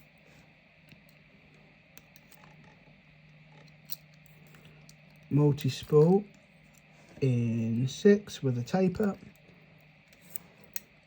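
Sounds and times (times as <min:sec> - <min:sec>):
faint steady hum: 0:00.0 - 0:11.0
small clicks of lock pins: 0:03.6 - 0:06.9.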